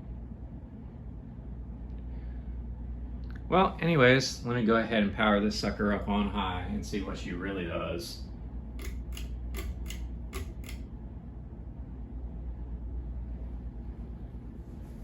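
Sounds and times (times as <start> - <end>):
ceiling fan humming: 0.0 - 15.0
fan speed switch clicks: 8.8 - 10.9.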